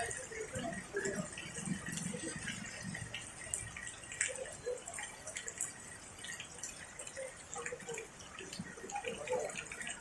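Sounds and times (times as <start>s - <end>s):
drips and splashes: 0.0s - 10.0s
rain falling: 0.0s - 10.0s.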